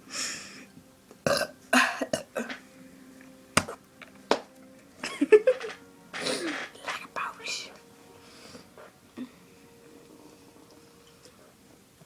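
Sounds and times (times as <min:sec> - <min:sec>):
person burping: 0:01.2 - 0:02.6.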